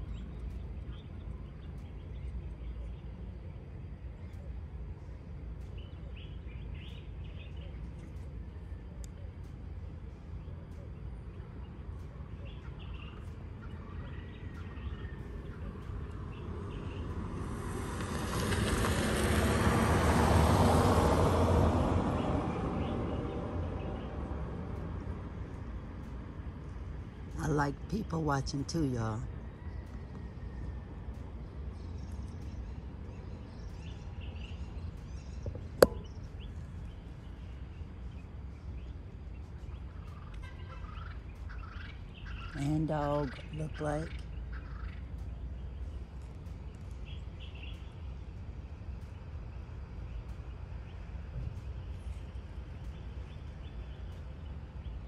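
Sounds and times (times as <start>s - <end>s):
bird chirps: 0.0s - 18.5s, 22.1s - 55.0s
low outdoor rumble: 0.0s - 55.0s.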